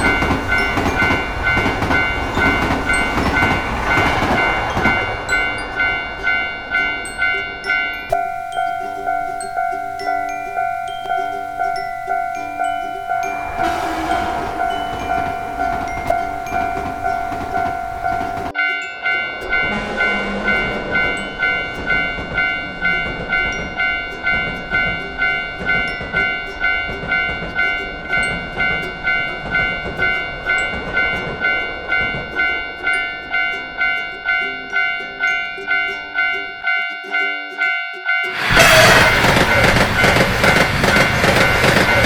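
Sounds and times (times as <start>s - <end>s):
electronic bell tone dinging: 0.0s - 24.2s
background noise: 0.0s - 42.0s.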